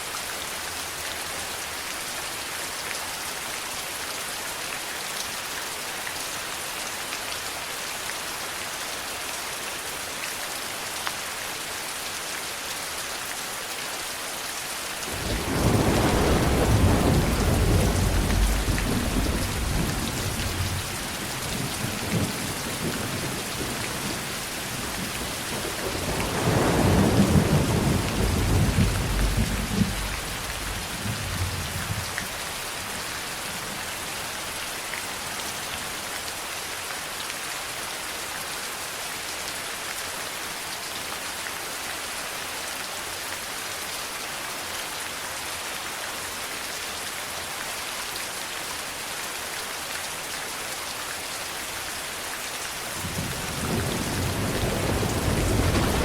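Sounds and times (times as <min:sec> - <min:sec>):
heavy rain hissing: 0:15.0 - 0:35.2, 0:52.8 - 0:56.0
thunder rolling: 0:15.1 - 0:20.9, 0:25.7 - 0:32.1, 0:53.1 - 0:56.0.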